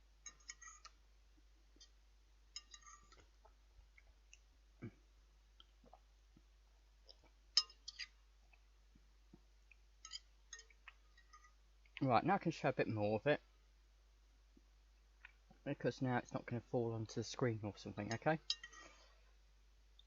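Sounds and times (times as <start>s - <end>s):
cutlery clinking on food tray: 10.0s - 11.5s.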